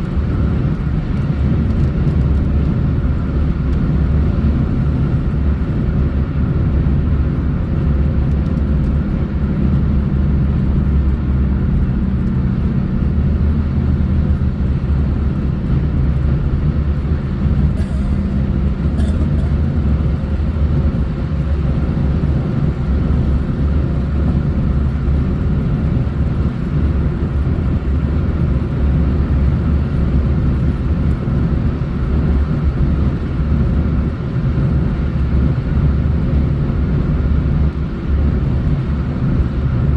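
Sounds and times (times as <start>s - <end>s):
car road noise rumble: 0.0s - 39.9s.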